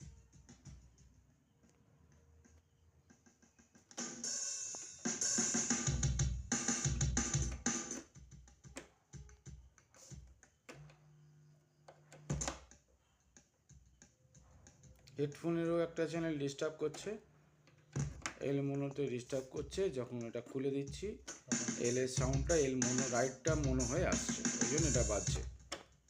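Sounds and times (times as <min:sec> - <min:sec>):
synthesizer drum kit sounds: 0:00.0 - 0:01.3, 0:02.5 - 0:10.9, 0:12.2 - 0:12.8, 0:17.9 - 0:26.0.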